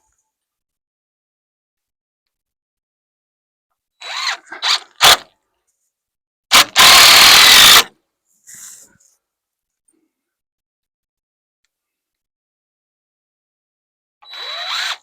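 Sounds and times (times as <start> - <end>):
power drill running: 4.0 - 5.2, 6.5 - 7.9, 14.3 - 15.0.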